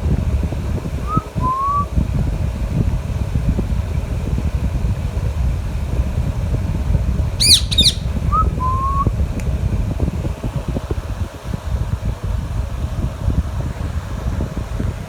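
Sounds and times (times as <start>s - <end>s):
steady low rumble: 0.0s - 15.0s
parrot whistling: 1.1s - 1.9s, 7.4s - 9.1s
parrot screeching: 7.4s - 8.5s.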